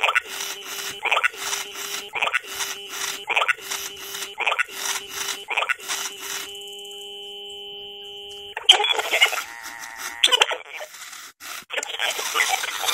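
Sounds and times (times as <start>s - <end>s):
loud noisy electronic burst: 0.0s - 7.5s
steady electronic tone: 0.0s - 9.4s
held electronic tone: 0.0s - 10.6s
toy rasping electronic noise: 0.0s - 12.9s.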